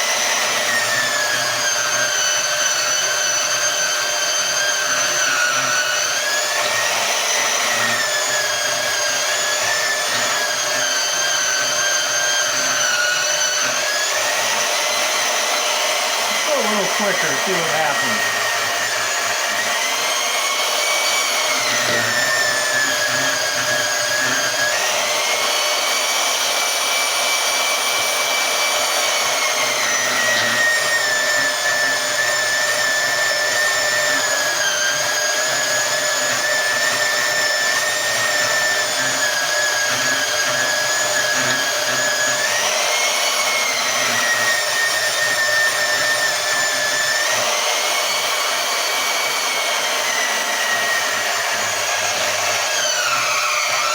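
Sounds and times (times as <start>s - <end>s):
band saw motor whine: 0.0s - 53.9s
blade grinding through metal: 20.7s - 24.9s.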